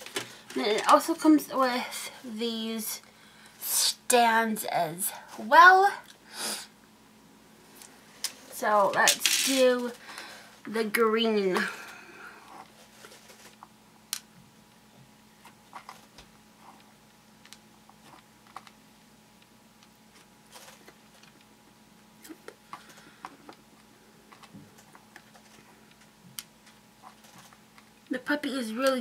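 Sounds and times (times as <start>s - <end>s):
faint steady hum: 0.0s - 29.0s
plastic beads clicking on a tray: 9.0s - 9.9s.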